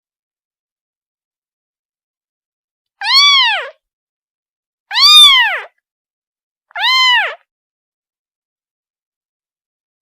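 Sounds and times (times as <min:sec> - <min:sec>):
kitten meowing: 0:03.0 - 0:03.8, 0:04.9 - 0:05.7, 0:06.7 - 0:07.4.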